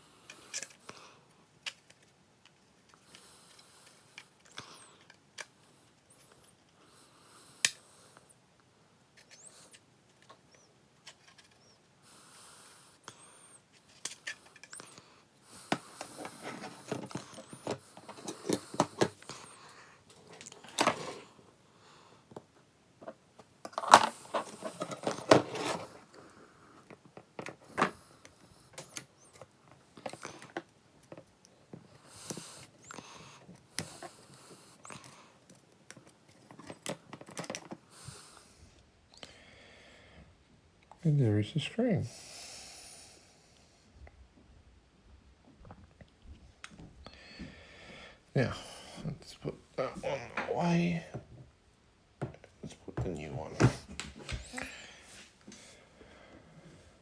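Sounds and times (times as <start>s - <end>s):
plastic parts clicking and scraping: 0.3s - 6.8s, 9.1s - 11.8s, 13.7s - 15.0s, 15.6s - 21.2s, 23.0s - 26.1s, 35.0s - 37.9s.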